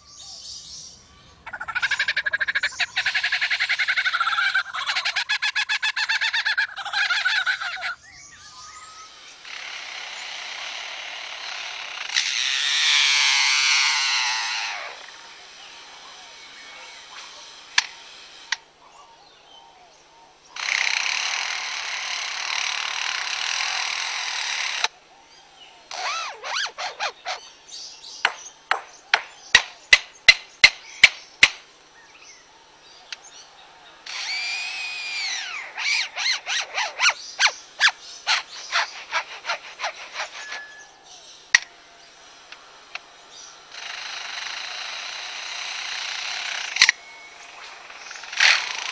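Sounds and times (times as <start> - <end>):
bird rising and falling whine: 0.0 - 18.5, 30.8 - 48.9
bird mimicking power tool whirring: 1.5 - 19.3, 20.0 - 48.9
bird sharp knocks and clicks: 28.3 - 31.6.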